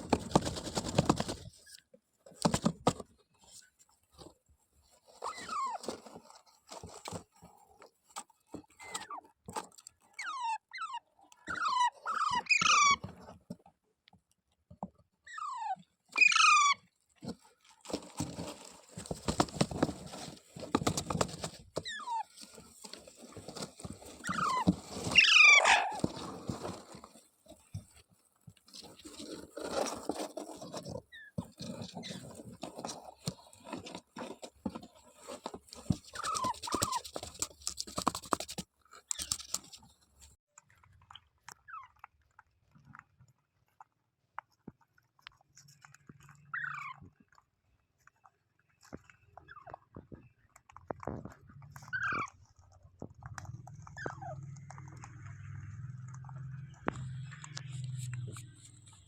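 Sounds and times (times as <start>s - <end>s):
rustling and scratching: 0.0s - 59.0s
parrot screeching: 10.2s - 13.0s, 15.3s - 16.8s, 24.2s - 26.0s.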